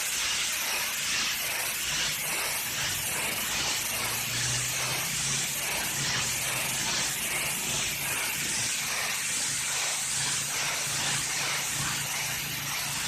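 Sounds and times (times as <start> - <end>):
pressure washer spray hissing: 0.0 - 13.0
pressure washer engine humming: 2.7 - 13.0.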